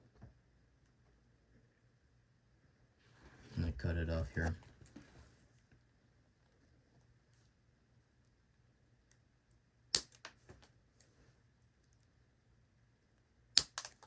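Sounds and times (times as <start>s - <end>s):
wire cutters snapping wire: 9.9s - 10.4s, 13.6s - 14.0s.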